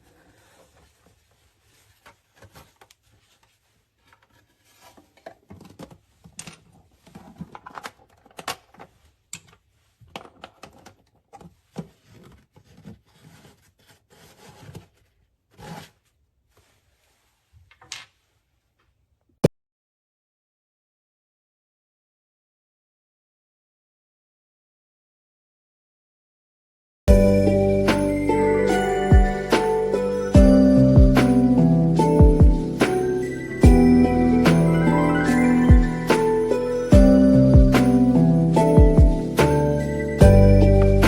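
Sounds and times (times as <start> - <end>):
rubbing and rustling: 0.0 - 18.8.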